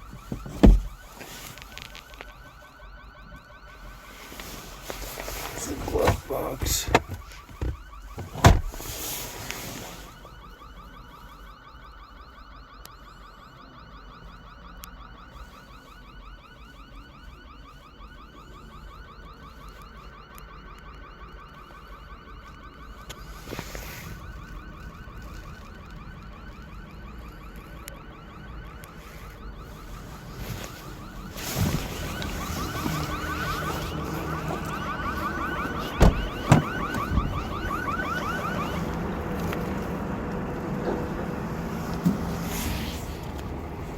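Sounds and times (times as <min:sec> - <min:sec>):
electronic alarm warble: 0:29.3 - 0:38.9.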